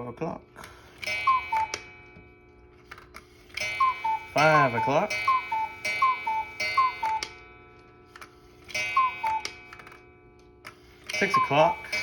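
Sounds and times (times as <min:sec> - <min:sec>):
clock ticking: 0:01.0 - 0:01.9, 0:03.6 - 0:07.3, 0:08.7 - 0:09.6, 0:11.0 - 0:12.0
two-note cuckoo call: 0:01.1 - 0:01.9, 0:03.6 - 0:07.3, 0:08.8 - 0:09.5, 0:11.2 - 0:12.0
clock gong strike: 0:03.6 - 0:07.7, 0:11.1 - 0:12.0.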